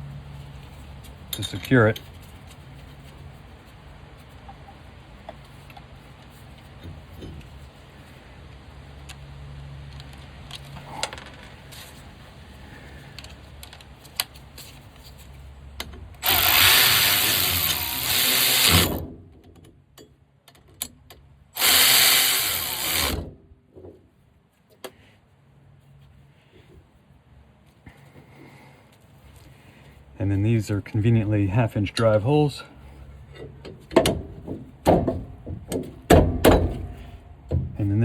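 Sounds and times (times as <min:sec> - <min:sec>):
clicks and knocks of parts handled: 0:01.0 - 0:02.6, 0:13.1 - 0:16.2, 0:18.7 - 0:21.3
power tool driving bolts: 0:16.2 - 0:19.1, 0:21.6 - 0:23.4.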